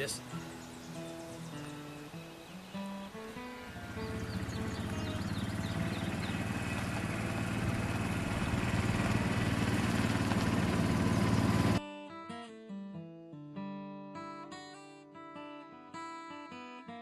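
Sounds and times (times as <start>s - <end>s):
engine running with even pulse: 3.5s - 11.8s.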